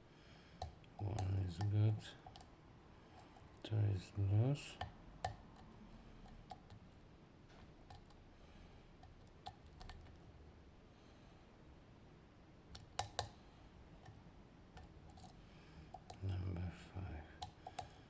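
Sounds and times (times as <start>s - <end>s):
lock pick clicking in a lock: 12.7s - 13.4s.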